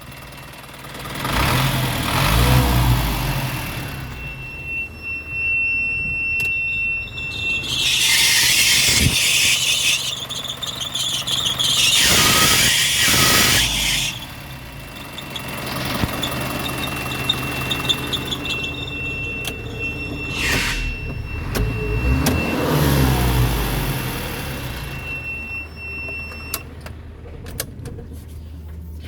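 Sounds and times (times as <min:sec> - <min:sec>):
diesel truck engine revving: 0:00.1 - 0:04.7, 0:06.7 - 0:25.8
high-pitched whine: 0:04.3 - 0:24.4.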